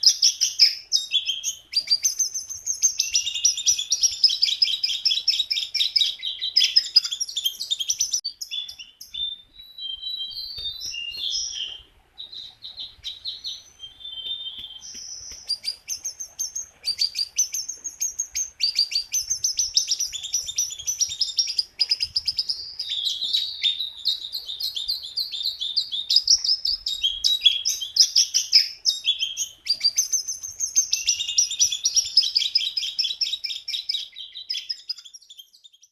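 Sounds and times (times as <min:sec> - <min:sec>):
songbird trilling: 0:00.0 - 0:35.9.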